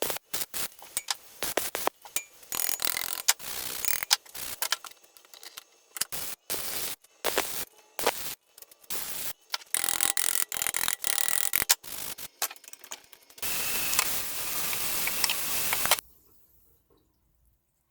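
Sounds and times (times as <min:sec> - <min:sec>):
tools rubbing and scraping wood: 0:00.8 - 0:06.2, 0:09.5 - 0:16.0.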